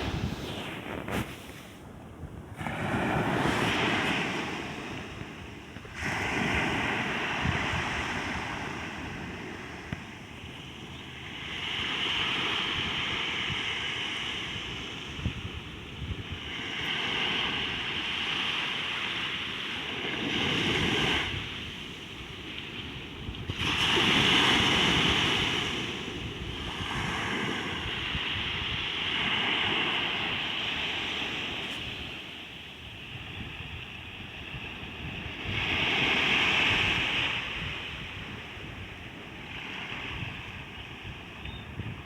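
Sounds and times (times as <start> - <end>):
sea waves breaking: 0.0 - 15.5, 16.2 - 41.3.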